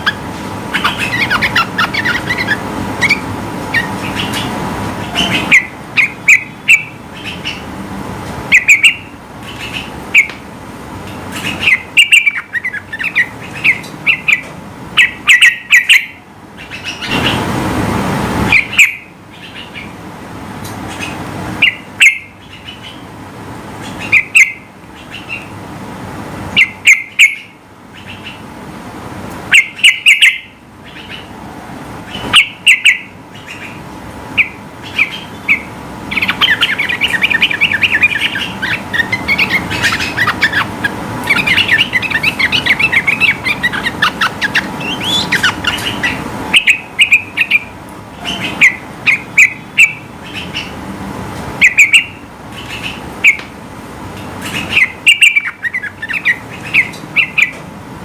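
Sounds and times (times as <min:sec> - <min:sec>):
bird whistling song: 0:00.0 - 0:07.6, 0:08.5 - 0:10.3, 0:11.4 - 0:17.4, 0:21.0 - 0:23.0, 0:23.9 - 0:25.5, 0:26.6 - 0:28.4, 0:29.5 - 0:31.3, 0:32.1 - 0:33.8, 0:34.4 - 0:50.7, 0:51.6 - 0:53.4, 0:54.5 - 0:57.6
rapid bird chattering: 0:00.0 - 0:07.8, 0:08.5 - 0:10.4, 0:11.2 - 0:17.4, 0:18.5 - 0:20.0, 0:20.8 - 0:23.1, 0:23.8 - 0:25.6, 0:26.6 - 0:28.5, 0:29.5 - 0:31.4, 0:32.1 - 0:50.8, 0:51.6 - 0:53.5, 0:54.4 - 0:57.6.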